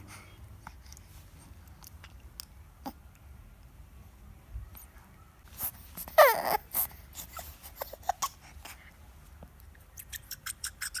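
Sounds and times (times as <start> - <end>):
rubber teether squeaking: 10.0 - 11.0.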